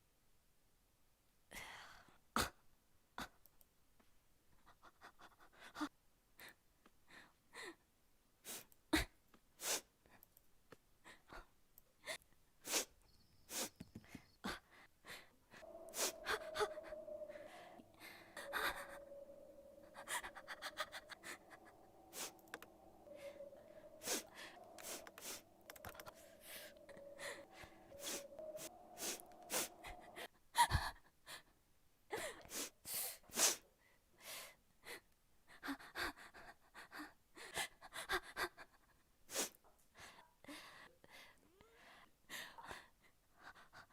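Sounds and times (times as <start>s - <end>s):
man breathing close to microphone: 15.0s - 30.3s
steady low hum: 15.4s - 30.2s
mouth clicks: 15.6s - 30.1s.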